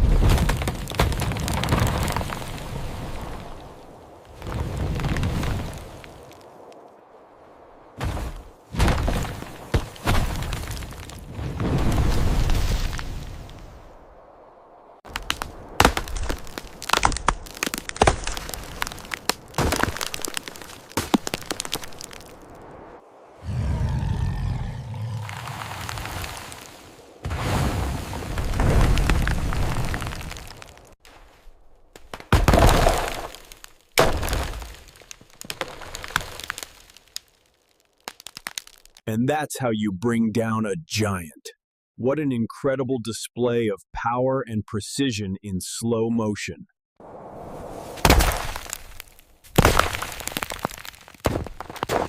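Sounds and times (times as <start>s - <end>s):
wood cracking and snapping: 0.0s - 2.8s, 8.8s - 13.6s, 15.1s - 22.6s, 28.4s - 31.0s, 31.9s - 39.0s, 48.0s - 52.0s
tree crashing down: 0.0s - 3.6s, 8.0s - 13.6s, 15.1s - 22.9s, 27.3s - 31.0s, 32.0s - 39.0s, 48.0s - 52.0s.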